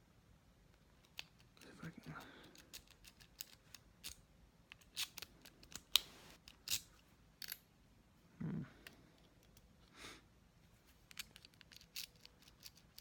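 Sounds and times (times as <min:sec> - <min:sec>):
lock pick scraping and clicking: 0:02.5 - 0:07.6, 0:11.1 - 0:13.0.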